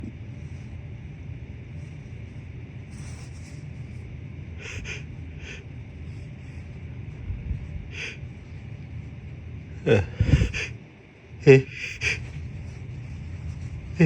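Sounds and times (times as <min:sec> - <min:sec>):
low rumble: 0:00.0 - 0:14.0.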